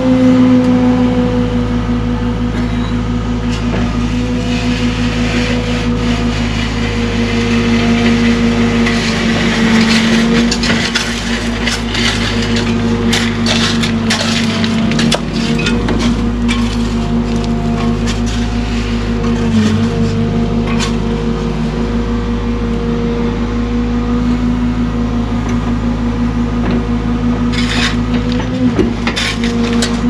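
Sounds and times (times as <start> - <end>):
excavator diesel engine running: 0.0 - 30.0
bucket digging crunching: 3.5 - 21.0, 27.5 - 30.0.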